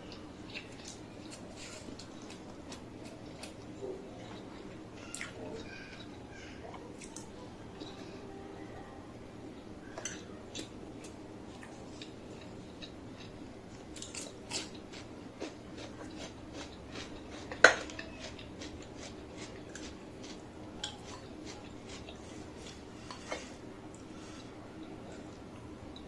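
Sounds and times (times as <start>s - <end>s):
faint steady hum: 0.0s - 26.0s
chewing crunchy food: 0.1s - 6.2s, 10.0s - 26.0s.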